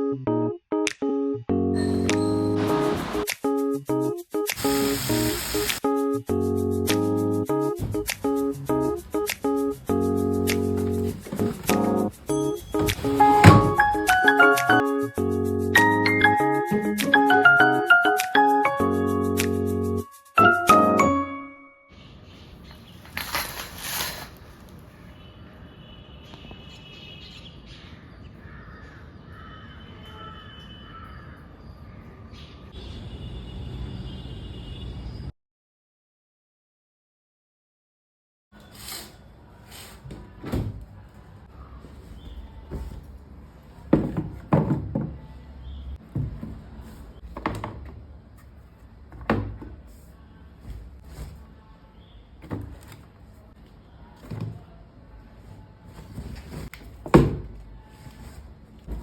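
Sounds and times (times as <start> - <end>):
household knocks and clunks: 10.8 - 14.1, 43.9 - 45.3, 46.0 - 46.7, 47.3 - 48.0, 49.1 - 49.8
crows cawing: 28.4 - 29.8, 30.9 - 31.4.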